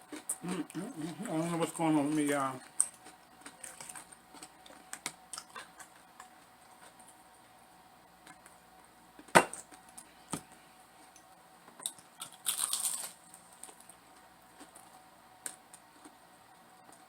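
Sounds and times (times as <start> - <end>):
crunchy bite: 12.2 - 13.8.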